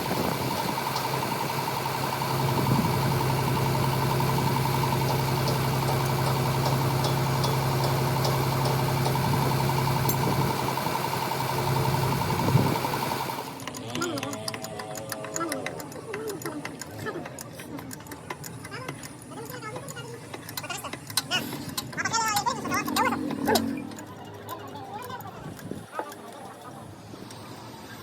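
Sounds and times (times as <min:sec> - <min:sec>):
engine idling: 0:00.0 - 0:13.8.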